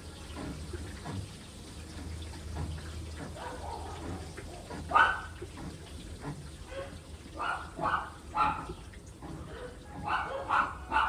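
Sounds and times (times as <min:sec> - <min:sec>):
dog barking: 0:03.4 - 0:04.1, 0:07.4 - 0:08.6, 0:10.0 - 0:11.0.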